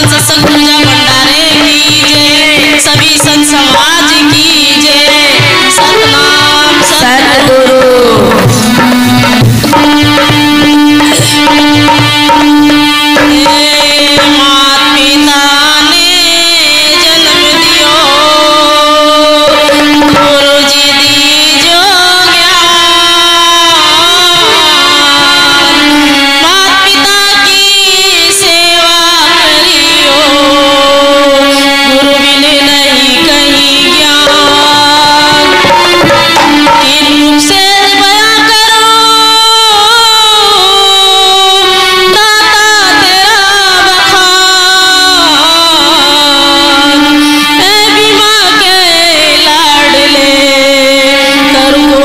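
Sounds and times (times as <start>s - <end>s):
percussion strokes: 0.0s - 18.2s, 29.7s - 39.2s
drum stroke: 5.3s - 14.4s, 35.0s - 37.1s.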